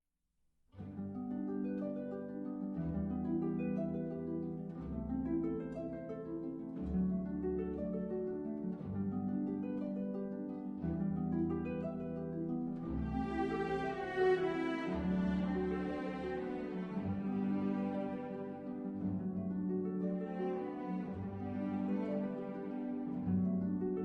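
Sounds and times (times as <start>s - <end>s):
harp-like plucked strings: 0.8s - 24.0s.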